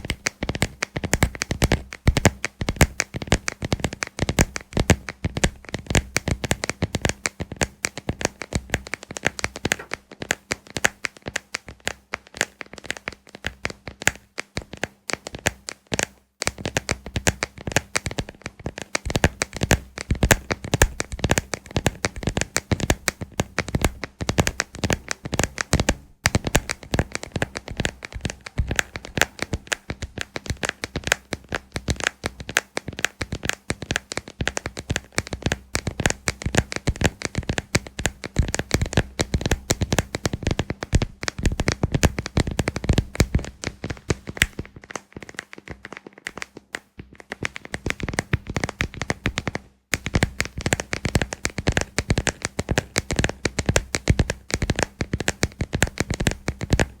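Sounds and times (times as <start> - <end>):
fingers tapping and scratching lamp: 18.8 - 49.4
faint low hum: 19.1 - 33.2.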